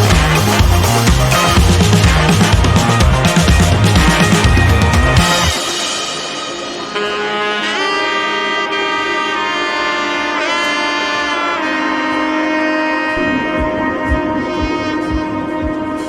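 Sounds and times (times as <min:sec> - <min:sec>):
drum beat: 0:00.0 - 0:05.8, 0:13.2 - 0:16.0
held brass notes: 0:00.0 - 0:16.0.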